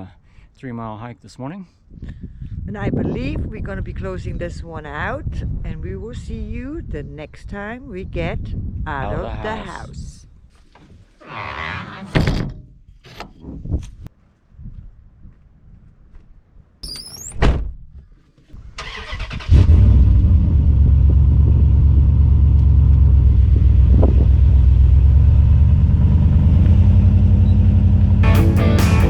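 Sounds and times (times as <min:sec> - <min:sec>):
vehicle engine starting and running: 0:18.6 - 0:29.0.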